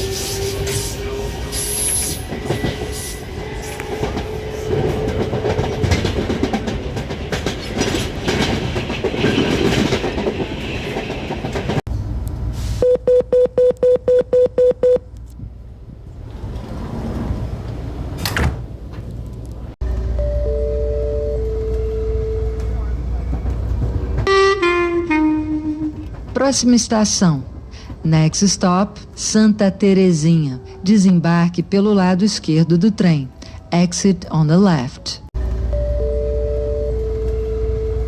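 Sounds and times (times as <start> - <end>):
electric train rattle and clatter: 0.0 - 12.8, 15.3 - 38.0
quick beeps: 12.8 - 15.0.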